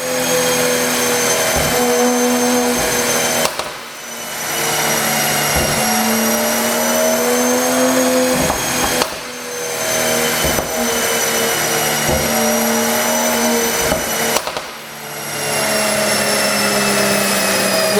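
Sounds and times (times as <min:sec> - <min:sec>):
car engine at raised revs: 0:00.0 - 0:17.9.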